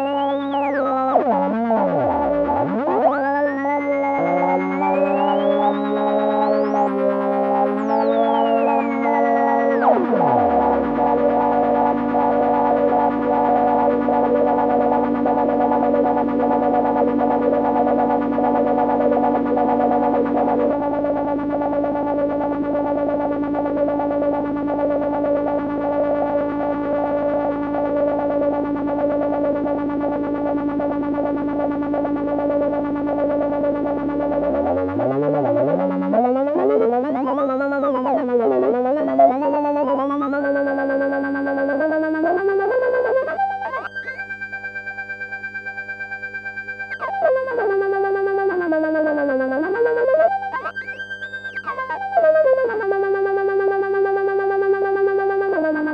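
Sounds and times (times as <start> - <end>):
electronic drone with filtered flutter: 0.0 - 43.9.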